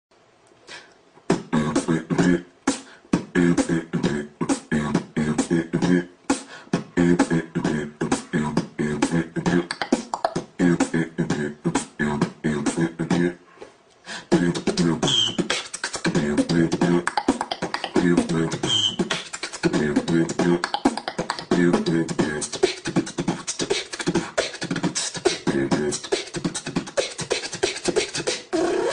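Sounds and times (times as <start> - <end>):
beatboxing: 0.6 - 28.9
humming bass line: 1.3 - 2.5, 3.1 - 6.1, 6.8 - 9.8, 10.4 - 13.4, 14.3 - 17.2, 17.9 - 26.9.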